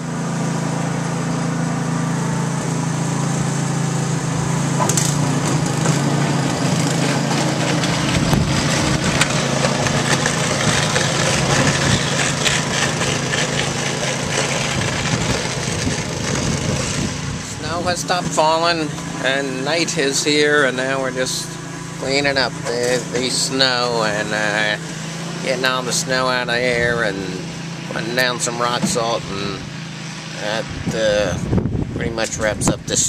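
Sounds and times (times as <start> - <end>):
snow blower engine running: 0.0 - 33.0.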